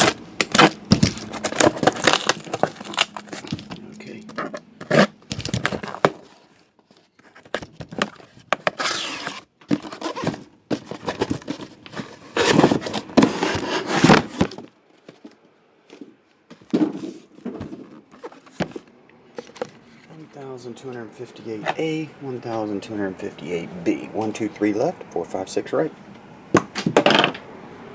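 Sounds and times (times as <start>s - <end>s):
cardboard rustling and tearing: 0.0s - 15.3s.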